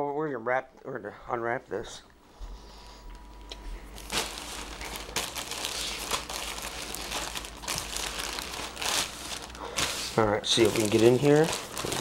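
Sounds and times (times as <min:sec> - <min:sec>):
wrapper crinkling and tearing: 0:04.0 - 0:12.0.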